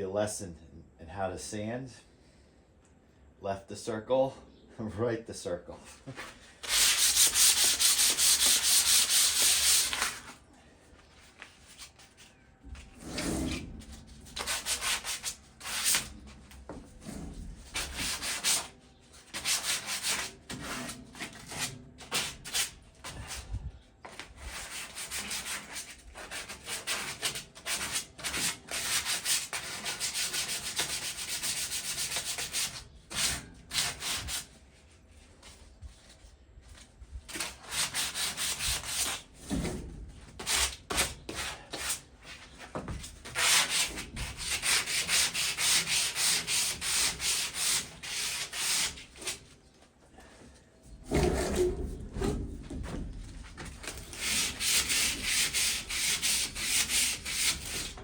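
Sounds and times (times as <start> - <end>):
sandpaper scraping rusty metal: 6.2 - 10.4, 11.2 - 23.6, 24.2 - 34.6, 37.3 - 49.5, 53.8 - 58.0.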